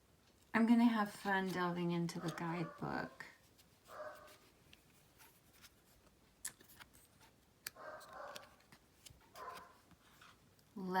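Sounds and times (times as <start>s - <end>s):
muffled dog bark: 3.9s - 4.3s, 7.8s - 8.5s, 9.4s - 9.8s.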